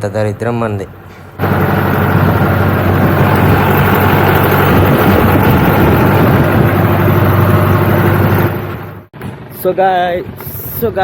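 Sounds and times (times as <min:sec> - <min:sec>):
road noise: 0:00.0 - 0:11.0
vehicle engine humming: 0:00.4 - 0:09.5.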